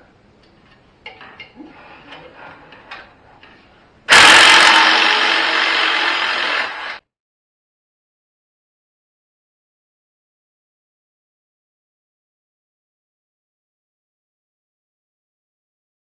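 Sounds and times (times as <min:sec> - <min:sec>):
power tool running: 0:04.1 - 0:07.0.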